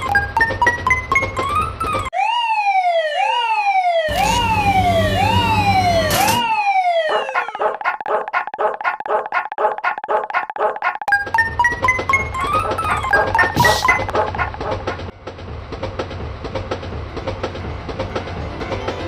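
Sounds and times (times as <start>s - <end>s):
falling siren-like wail: 1.9s - 7.8s
pulsing ringing alarm tone: 3.0s - 7.6s
low buzzing drone: 4.1s - 6.4s.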